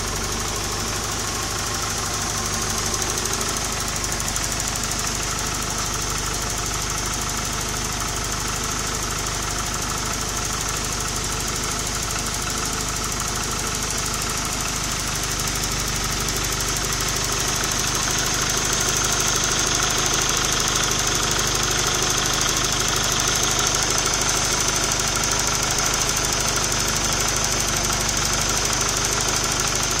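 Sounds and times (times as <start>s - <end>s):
vehicle engine running: 0.0s - 30.0s.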